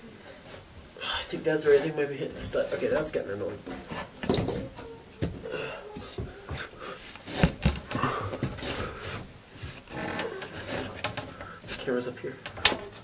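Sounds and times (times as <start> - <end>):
knocks clicks and scraping: 6.0 - 13.0.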